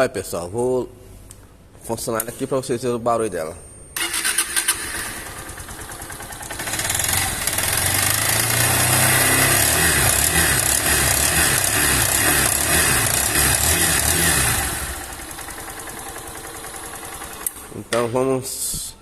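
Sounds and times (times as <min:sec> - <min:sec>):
abnormal internal engine noise: 0:04.0 - 0:18.3
motorcycle engine running: 0:05.2 - 0:17.9.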